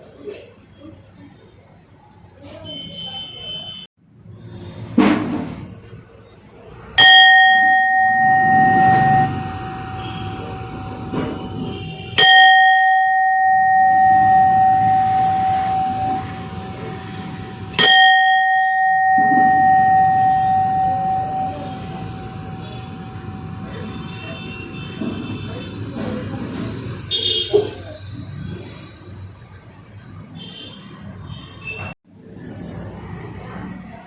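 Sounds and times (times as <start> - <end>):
metal bell clanging and ringing: 7.0 - 24.0.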